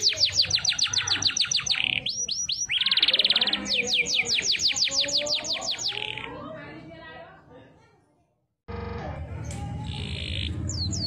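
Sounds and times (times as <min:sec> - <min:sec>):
canary singing: 0:00.0 - 0:06.4, 0:09.5 - 0:11.0.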